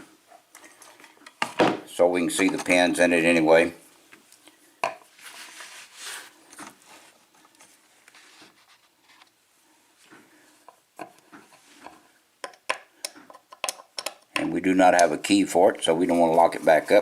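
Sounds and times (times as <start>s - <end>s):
faint rustling: 3.8s - 12.2s.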